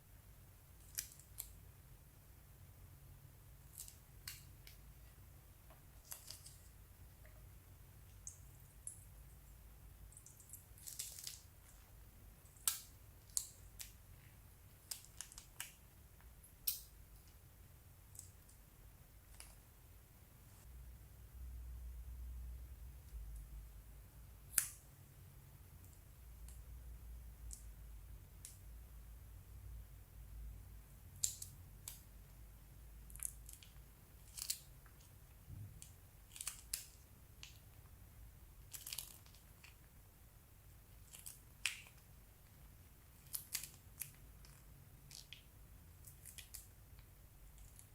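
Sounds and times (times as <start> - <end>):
faint sharp crackles and clicks: 10.1 - 14.1, 14.7 - 17.4, 19.2 - 19.7, 31.1 - 32.4, 33.0 - 38.0, 38.6 - 40.0, 40.7 - 47.9.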